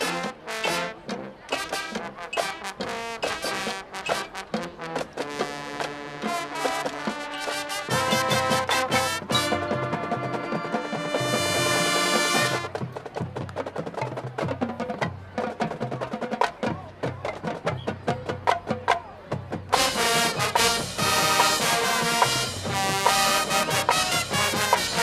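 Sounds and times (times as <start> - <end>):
marching band playing: 0.0 - 25.0
brass chord: 1.7 - 12.7, 19.8 - 25.0.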